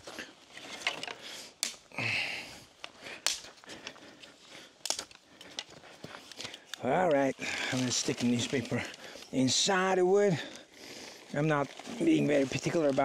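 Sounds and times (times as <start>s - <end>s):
rustling: 2.8s - 13.0s.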